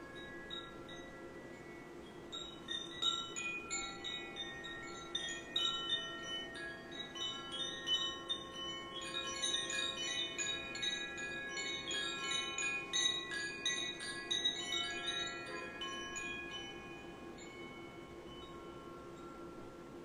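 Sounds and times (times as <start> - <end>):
wind chime tinkling: 0.0 - 20.0.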